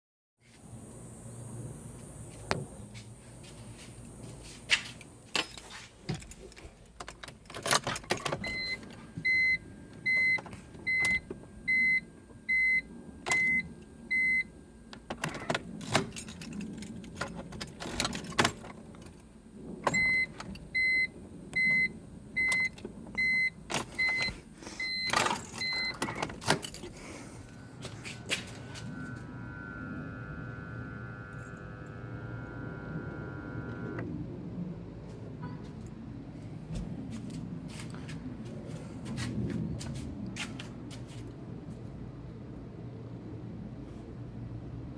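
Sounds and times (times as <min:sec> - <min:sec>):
keys clicking and jangling: 0:04.2 - 0:09.0, 0:15.2 - 0:20.7, 0:23.7 - 0:29.0
car warning chime beeping: 0:08.2 - 0:14.6, 0:19.9 - 0:26.8, 0:27.5 - 0:34.0.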